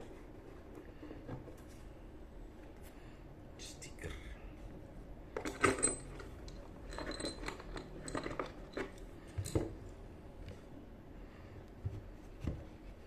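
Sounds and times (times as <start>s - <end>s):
small parts clinking: 5.3s - 9.8s.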